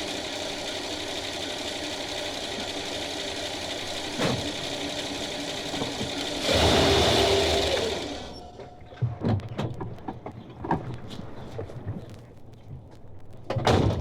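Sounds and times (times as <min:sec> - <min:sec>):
machine humming: 0:00.0 - 0:09.0
sharp knocks and clicks: 0:08.6 - 0:12.2.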